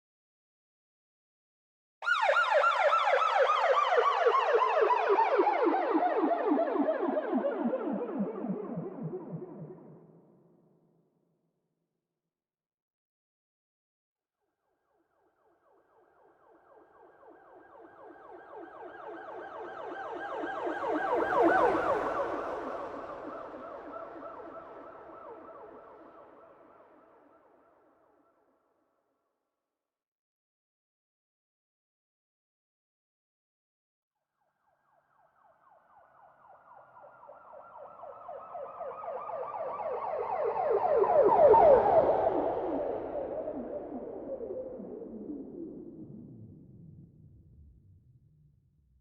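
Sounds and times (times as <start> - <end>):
siren in a fast yelp: 2.0 - 9.9, 17.0 - 27.6, 34.7 - 45.5.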